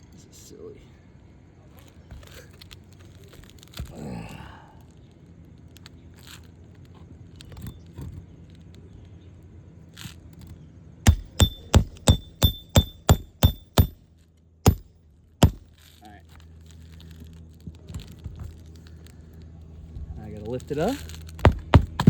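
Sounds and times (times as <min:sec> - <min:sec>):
hammer striking metal tool: 0:11.1 - 0:14.0, 0:14.7 - 0:15.7, 0:21.5 - 0:22.0.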